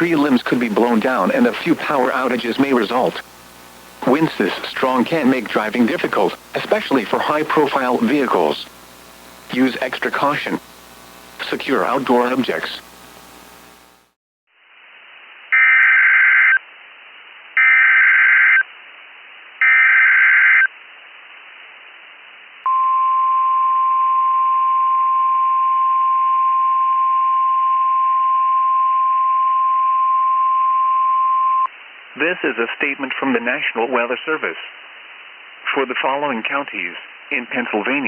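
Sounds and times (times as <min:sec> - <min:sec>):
receiver static: 0:00.0 - 0:23.7, 0:29.2 - 0:38.0.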